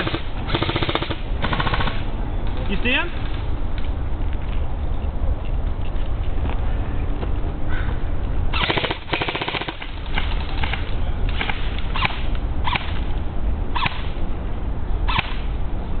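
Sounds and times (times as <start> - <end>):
airsoft guns firing: 0.0 - 2.0, 8.6 - 13.0
steady low rumble: 0.0 - 16.0.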